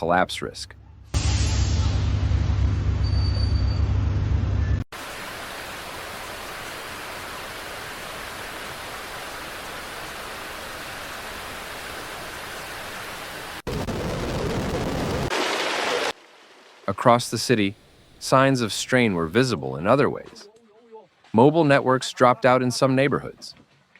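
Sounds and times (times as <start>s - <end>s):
deep low rumble: 1.2s - 4.8s
heavy rain hissing: 5.0s - 16.1s
deep rushing water: 5.0s - 17.6s.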